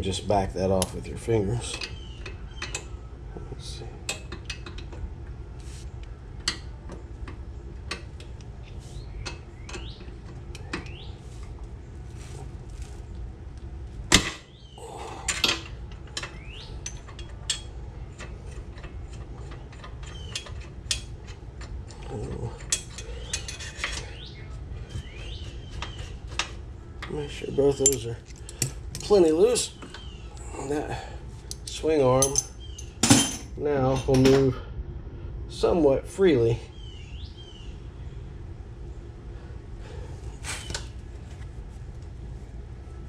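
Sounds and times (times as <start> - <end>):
metal tools clinking: 15.3 - 24.2, 26.4 - 29.5, 31.5 - 34.4.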